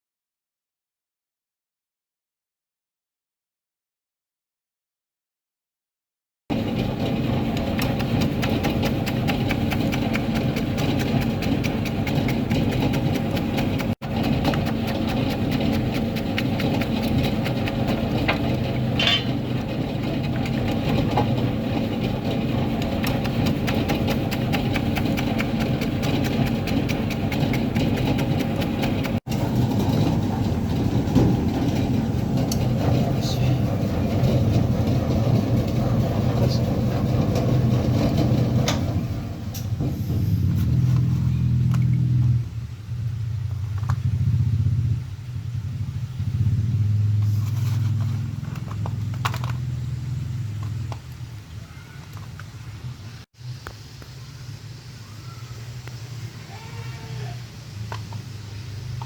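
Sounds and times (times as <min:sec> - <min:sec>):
slicing machine motor hum: 0:06.5 - 0:39.8
fast fine ticking: 0:07.2 - 0:29.2.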